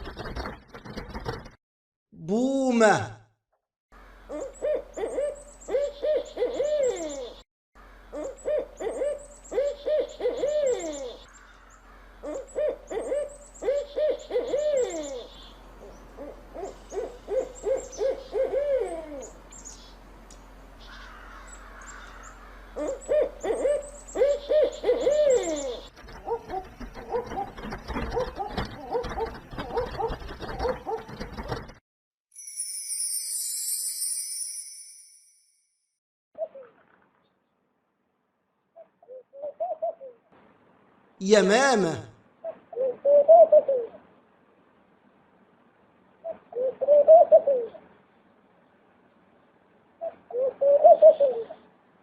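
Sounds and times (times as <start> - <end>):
owl hooting: 4.3 - 7.4, 8.1 - 20.0, 20.8 - 27.4, 41.9 - 44.0, 46.2 - 47.8, 50.0 - 51.6.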